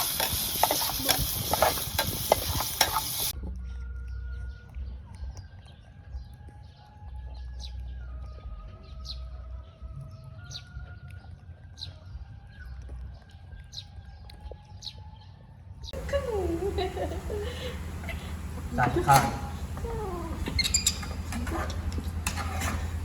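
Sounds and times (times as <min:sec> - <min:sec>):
birds chirping: 0:00.0 - 0:03.3, 0:16.0 - 0:23.0.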